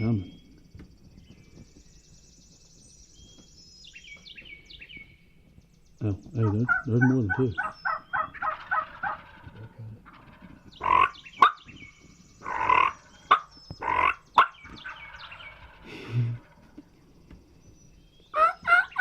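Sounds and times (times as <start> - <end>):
faint songbird chirps: 0.0 - 19.0
harsh raspy bird calls: 6.0 - 16.9, 18.3 - 19.0
turkey gobbles: 6.2 - 11.8, 12.4 - 16.8, 18.3 - 19.0.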